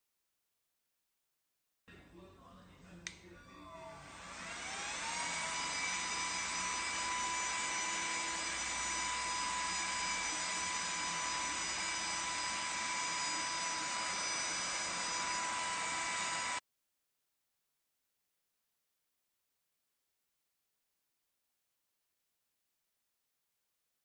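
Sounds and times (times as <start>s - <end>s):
vacuum motor whining: 3.8s - 16.6s.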